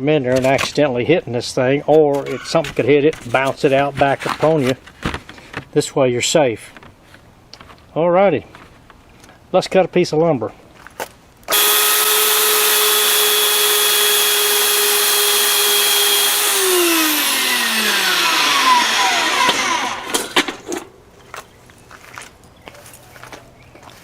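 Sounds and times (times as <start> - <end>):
band saw motor whine: 11.5 - 20.5.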